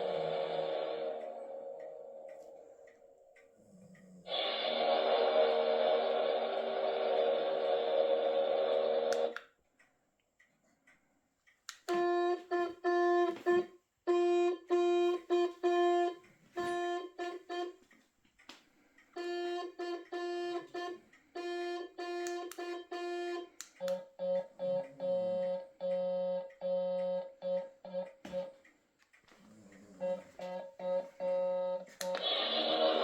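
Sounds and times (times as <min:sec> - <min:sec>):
steady electronic chord tone: 0:00.0 - 0:03.2.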